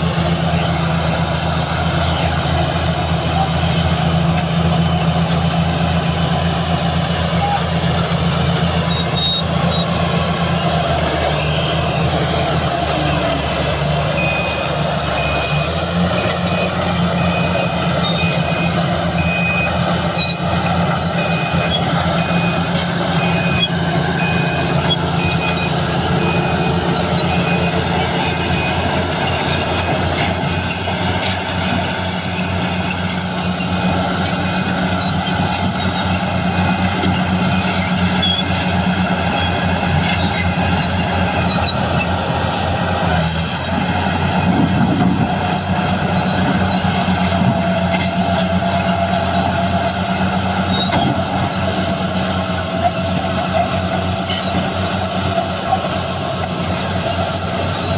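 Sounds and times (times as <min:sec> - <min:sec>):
bulldozer diesel engine running: 0:00.0 - 0:57.9
reversing alarm beeping: 0:06.0 - 0:42.6.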